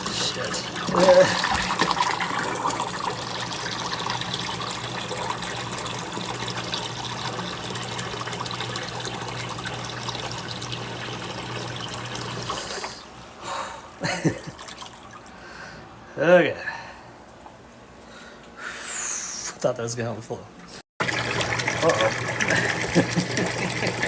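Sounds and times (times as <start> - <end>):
water running from drain hose: 0.0 - 13.3, 21.0 - 24.0
drain pump humming: 0.0 - 15.9, 21.0 - 24.0.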